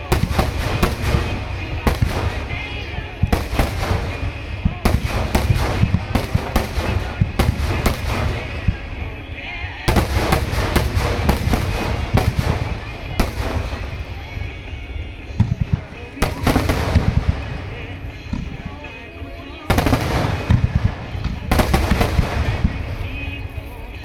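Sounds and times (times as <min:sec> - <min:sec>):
firework shells bursting: 0:00.0 - 0:09.2, 0:09.9 - 0:14.6, 0:19.7 - 0:23.6.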